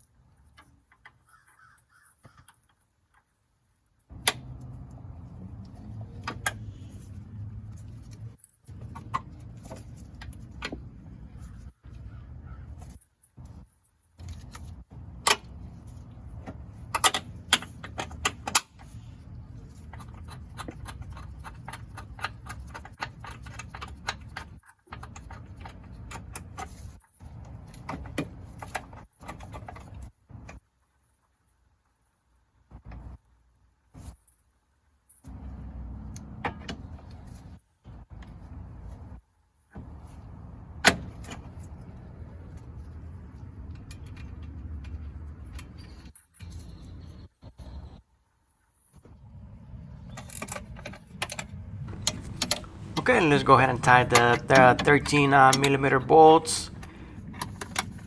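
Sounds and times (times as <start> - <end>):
metal tools clinking: 50.1 - 58.0
steady low hum: 51.1 - 58.0.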